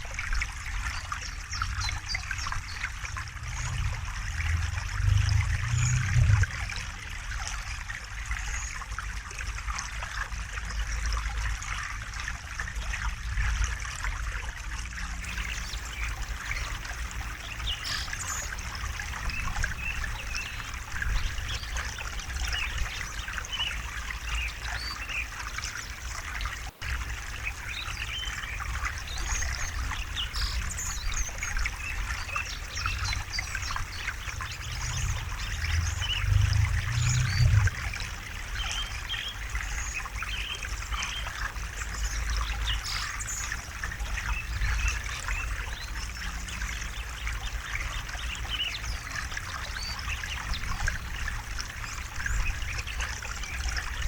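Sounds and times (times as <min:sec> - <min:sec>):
low rumble: 0:03.3 - 0:06.6, 0:33.0 - 0:38.6
river water babbling over stones: 0:15.2 - 0:54.0.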